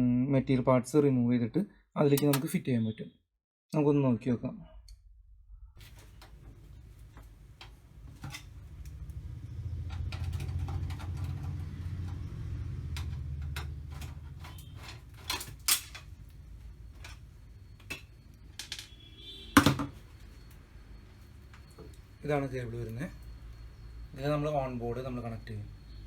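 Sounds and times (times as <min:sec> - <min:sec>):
low rumble: 0:04.6 - 0:05.9.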